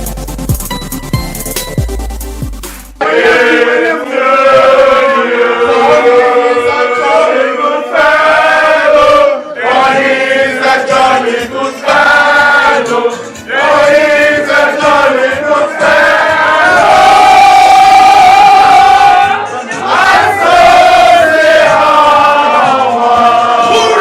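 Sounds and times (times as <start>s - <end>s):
electronic beat: 0.0s - 3.0s
group singing in chorus: 3.0s - 24.0s.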